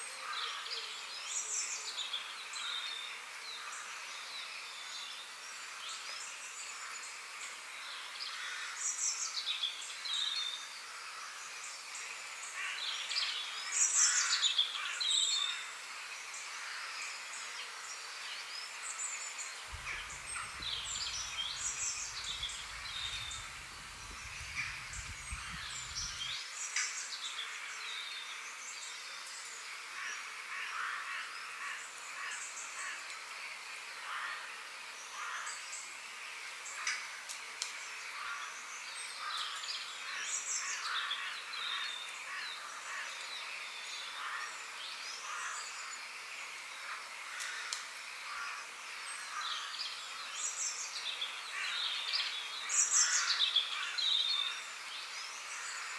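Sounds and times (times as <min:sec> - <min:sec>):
forest ambience hiss: 0:00.0 - 0:55.9
low rumble: 0:19.7 - 0:26.3
birds chirping and calling: 0:19.7 - 0:26.4.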